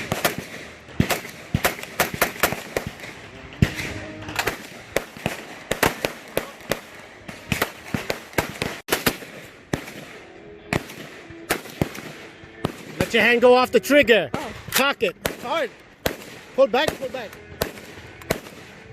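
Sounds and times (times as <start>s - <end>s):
gunshots: 0.0s - 18.9s.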